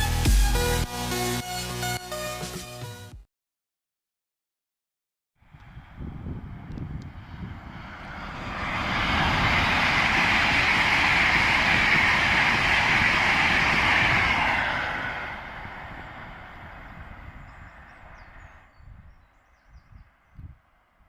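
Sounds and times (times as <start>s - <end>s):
low rumble: 5.4s - 20.8s
train passing on rails: 5.4s - 21.0s.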